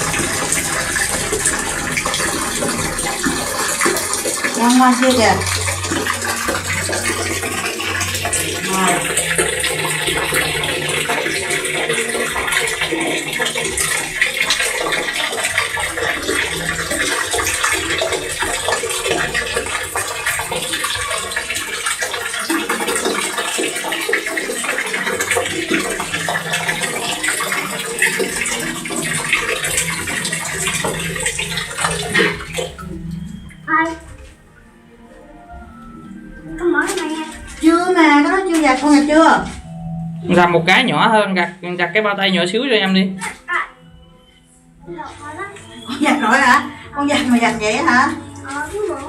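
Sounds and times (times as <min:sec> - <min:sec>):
low hum: 0:00.0 - 0:21.2, 0:25.3 - 0:42.3
water running and splashing: 0:00.0 - 0:44.0, 0:44.8 - 0:49.0.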